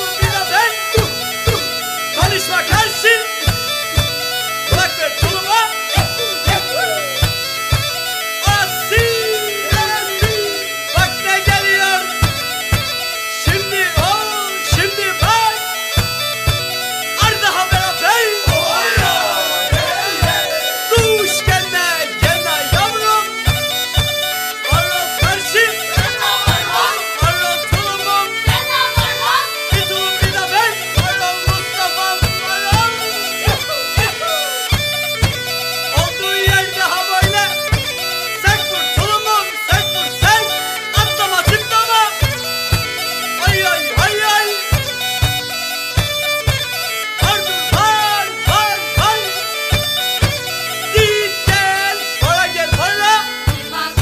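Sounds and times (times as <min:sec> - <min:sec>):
wind instrument melody: 0:00.0 - 0:54.0
steady drum beat: 0:00.2 - 0:36.6, 0:47.2 - 0:54.0.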